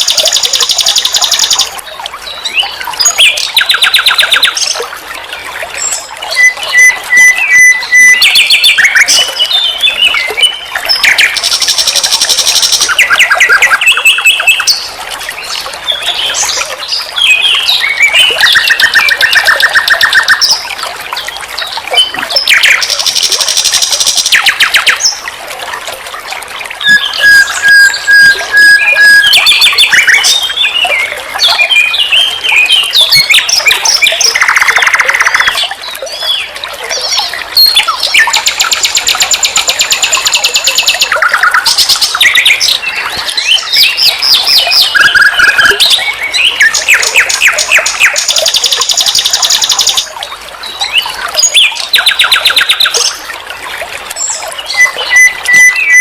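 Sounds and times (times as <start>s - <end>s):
nightingale singing: 37.6s - 50.1s.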